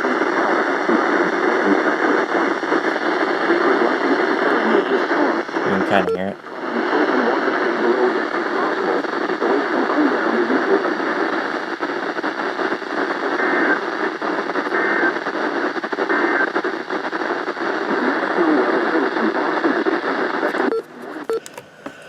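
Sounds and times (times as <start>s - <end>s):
radio static: 0.0s - 17.2s
faint radio voice: 2.8s - 6.4s.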